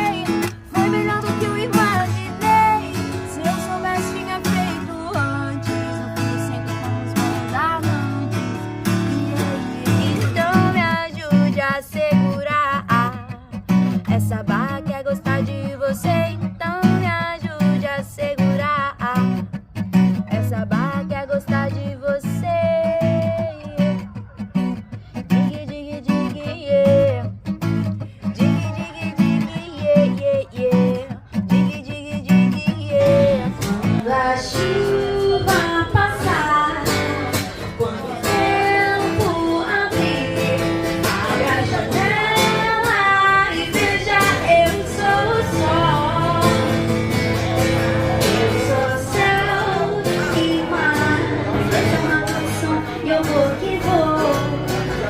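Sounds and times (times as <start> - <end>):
person singing: 0.0 - 13.4, 20.2 - 27.3, 28.0 - 55.0
acoustic guitar strumming: 0.0 - 55.0.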